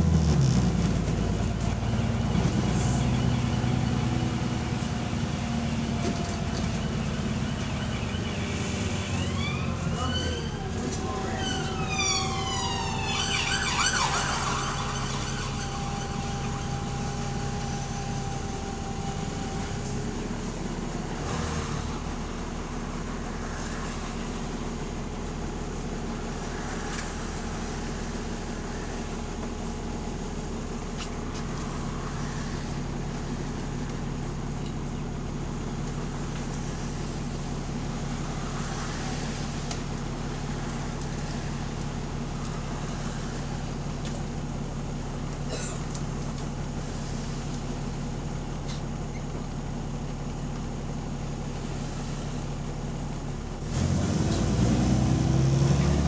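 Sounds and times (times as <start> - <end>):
bus engine low drone: 0.0 - 56.0
exhaust leak noise: 11.4 - 55.6.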